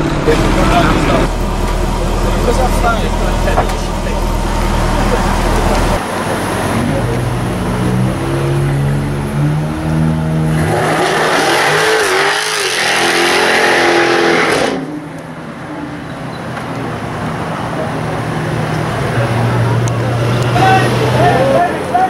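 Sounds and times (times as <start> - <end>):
car engine revving: 0.0 - 15.7.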